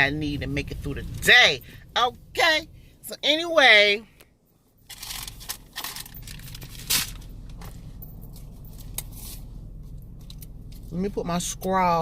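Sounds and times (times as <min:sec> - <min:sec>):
paper wrapper crinkling and tearing: 0:04.9 - 0:07.3.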